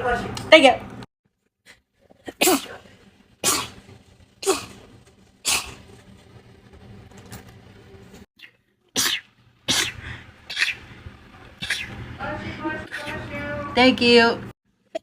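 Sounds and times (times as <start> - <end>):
person sneezing: 2.3 - 2.8, 3.4 - 3.8, 4.4 - 4.8, 9.0 - 10.8.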